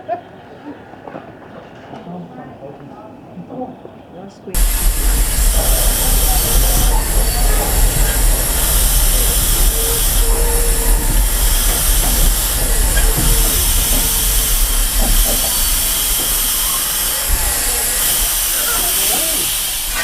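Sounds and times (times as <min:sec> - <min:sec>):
steam locomotive hissing: 0:04.5 - 0:20.0.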